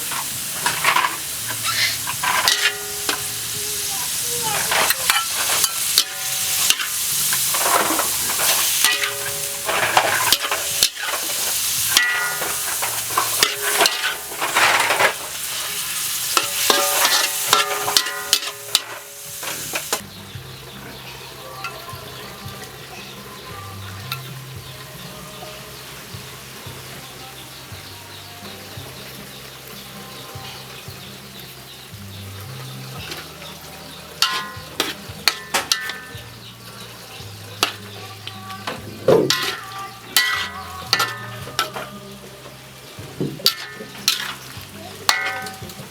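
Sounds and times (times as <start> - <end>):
utensil scraping a pan: 0.0 - 20.0, 34.2 - 45.9
food sizzling in a pan: 0.0 - 45.9
utensil ringing against pan: 0.6 - 20.0, 34.2 - 36.2, 39.3 - 42.0, 45.1 - 45.9.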